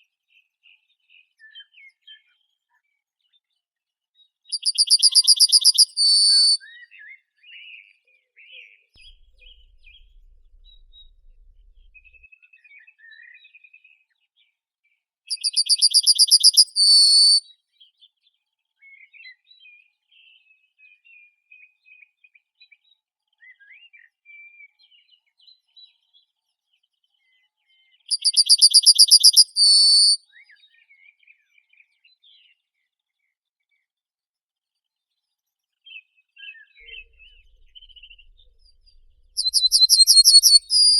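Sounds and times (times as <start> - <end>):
bird trilling loudly: 4.6 - 6.6, 15.4 - 17.4, 28.2 - 30.2, 36.9 - 40.9
faint birds twittering: 4.6 - 6.8, 9.0 - 12.2, 15.3 - 17.4, 28.1 - 30.2, 36.4 - 40.9.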